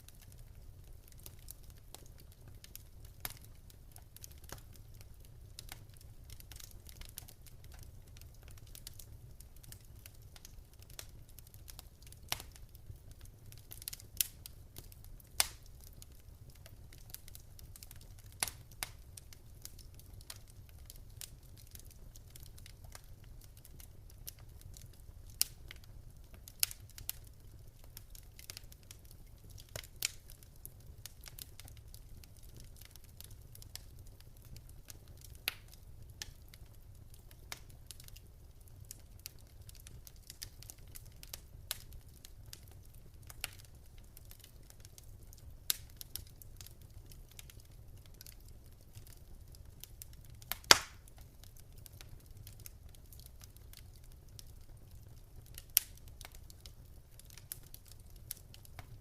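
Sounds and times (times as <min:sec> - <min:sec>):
wood fire crackling and popping: 0:00.0 - 0:59.0.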